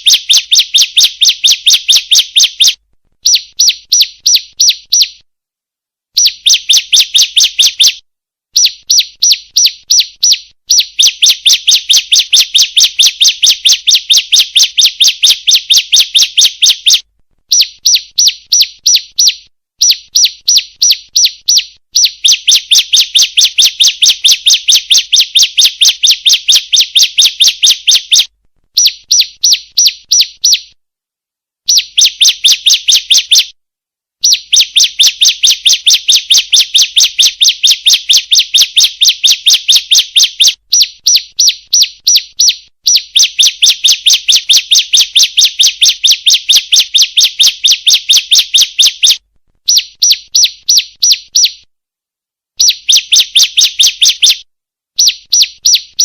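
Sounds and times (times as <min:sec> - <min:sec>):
bird sharp chirps: 0:00.0 - 0:05.2, 0:06.2 - 0:30.8, 0:31.7 - 0:33.6, 0:34.2 - 0:51.7, 0:55.0 - 0:56.0.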